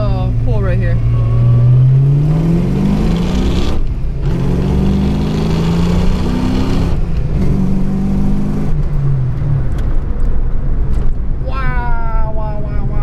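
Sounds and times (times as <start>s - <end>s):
car engine accelerating hard: 0.0s - 10.3s.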